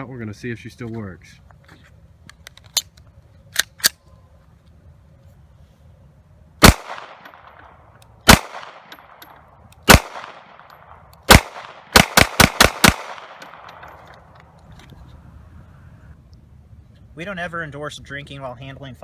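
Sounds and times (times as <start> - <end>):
pistol shots with ringing echo: 6.6 - 14.1.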